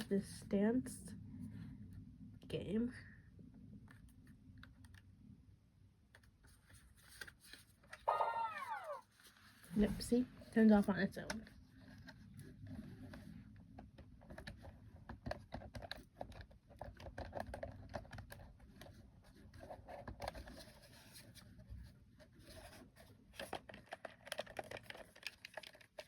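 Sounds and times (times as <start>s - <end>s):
plastic toys clicking and rustling: 23.3s - 26.0s.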